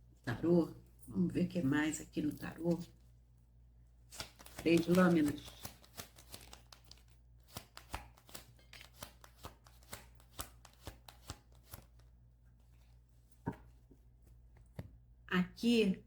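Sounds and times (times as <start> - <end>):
cards being shuffled by hand: 4.1 - 12.1.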